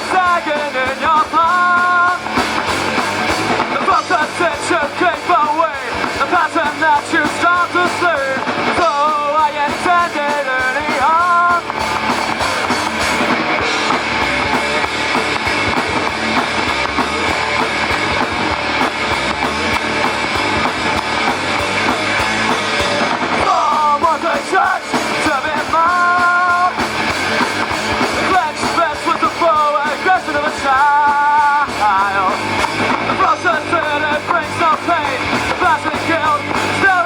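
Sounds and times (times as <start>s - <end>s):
person singing: 0.0s - 2.4s, 3.6s - 15.1s, 22.4s - 27.4s, 28.0s - 37.0s
live rock band playing: 0.0s - 37.0s.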